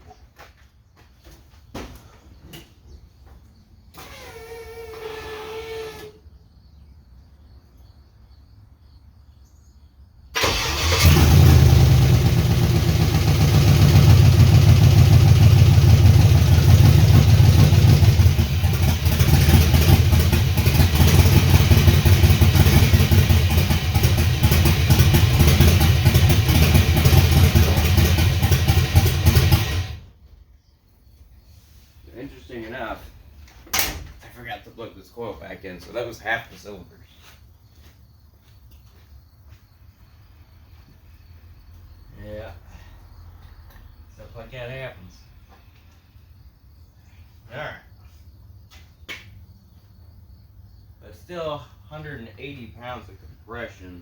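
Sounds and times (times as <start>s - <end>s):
engine misfiring at idle: 10.4s - 30.1s.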